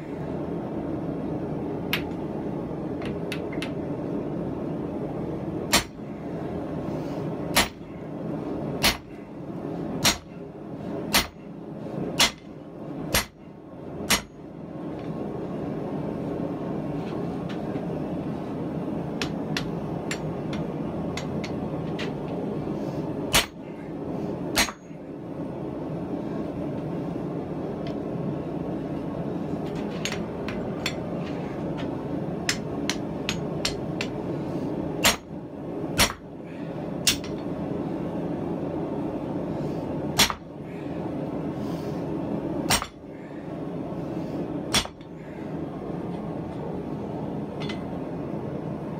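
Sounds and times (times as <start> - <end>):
hammer striking hot steel on anvil: 5.7 - 6.0, 7.5 - 7.8, 8.8 - 9.2, 10.0 - 10.3, 11.1 - 11.4, 12.2 - 12.5, 13.1 - 13.4, 14.1 - 14.4, 23.3 - 23.6, 24.5 - 24.9, 32.4 - 34.2, 35.0 - 35.3, 36.0 - 36.2, 37.0 - 37.4, 40.2 - 40.5, 42.7 - 43.0, 44.7 - 45.1.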